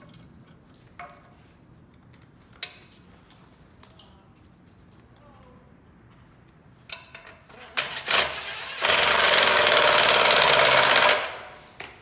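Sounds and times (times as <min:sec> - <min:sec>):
small gas engine running: 0:07.7 - 0:11.5.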